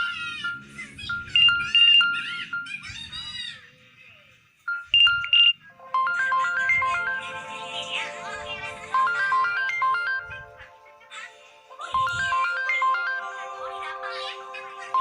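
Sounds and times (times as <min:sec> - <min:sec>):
phone ringtone melody: 0:00.0 - 0:03.3, 0:04.7 - 0:15.0.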